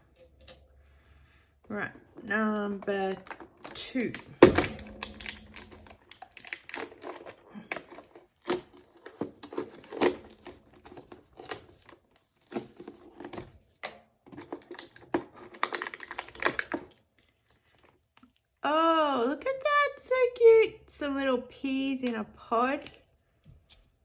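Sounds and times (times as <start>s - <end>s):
packaging crinkling and tearing: 3.0s - 18.3s.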